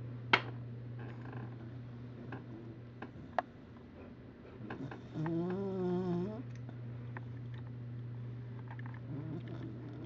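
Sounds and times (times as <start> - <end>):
steady low hum: 0.0 - 10.0
dog snoring: 4.6 - 6.5, 9.0 - 10.0.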